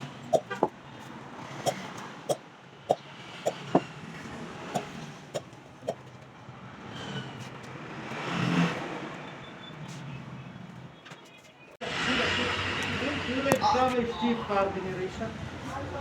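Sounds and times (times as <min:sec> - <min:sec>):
vehicle engine passing by: 0:02.9 - 0:09.3, 0:11.8 - 0:16.0.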